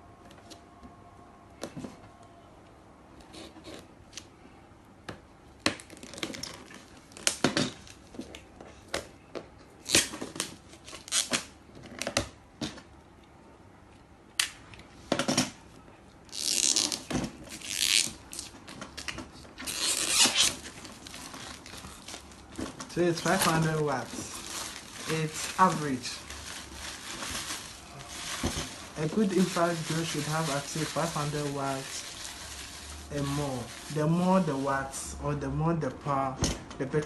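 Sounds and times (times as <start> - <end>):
packaging crinkling and tearing: 5.7 - 8.0, 9.8 - 12.1, 16.3 - 34.6.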